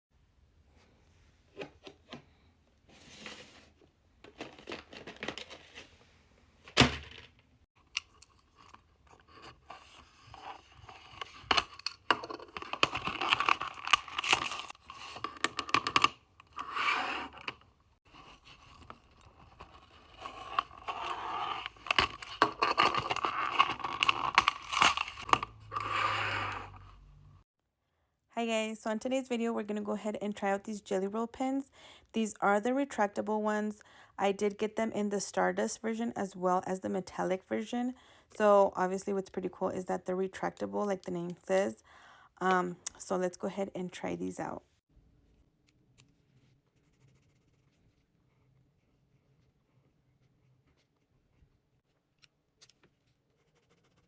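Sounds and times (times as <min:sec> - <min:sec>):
packaging tearing and crinkling: 0:12.6 - 0:14.8, 0:19.4 - 0:25.4.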